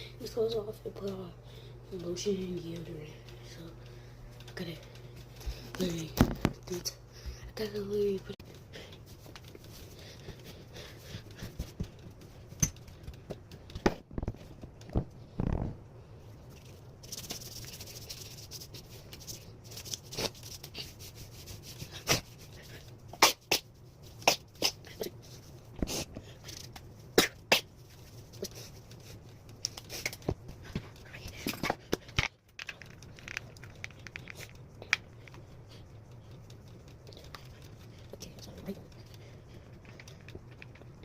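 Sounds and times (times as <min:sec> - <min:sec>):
clothing handling clicks and knocks: 0:11.1 - 0:15.7.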